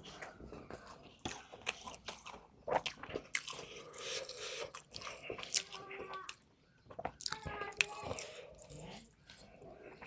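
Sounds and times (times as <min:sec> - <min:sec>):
person biting and chewing food: 0:00.0 - 0:10.0.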